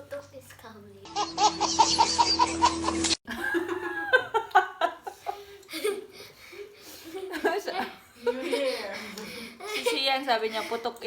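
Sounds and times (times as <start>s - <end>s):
rhythmic laughter: 1.2s - 6.3s
people laughing and talking: 3.3s - 11.0s.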